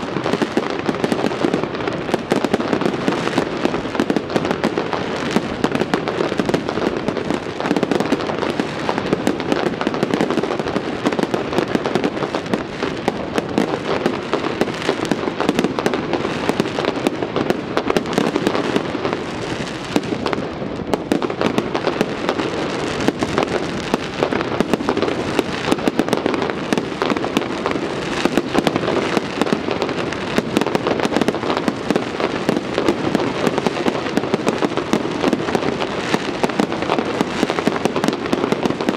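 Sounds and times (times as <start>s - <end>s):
fireworks banging and crackling: 0.0s - 38.9s.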